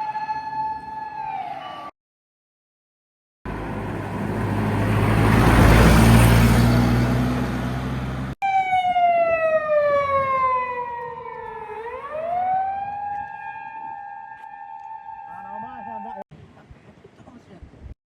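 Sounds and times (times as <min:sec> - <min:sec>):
emergency vehicle siren wailing: 0:00.0 - 0:01.9, 0:03.5 - 0:16.2
vehicle passing by: 0:03.5 - 0:08.4.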